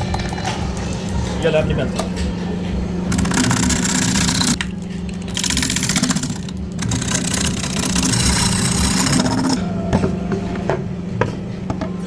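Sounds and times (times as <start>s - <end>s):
woodworking machine humming: 2.9s - 10.8s.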